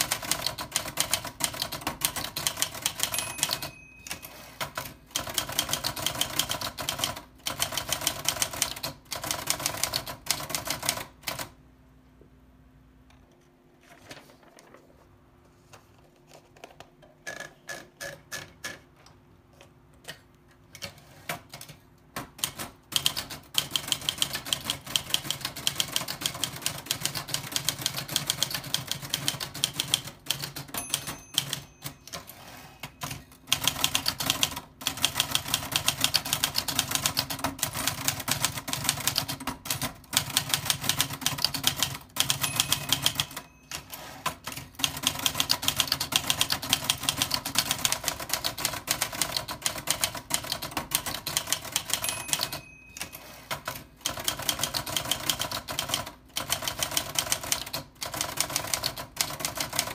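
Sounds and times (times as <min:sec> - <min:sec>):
typewriter key strikes: 0:40.3 - 0:43.9.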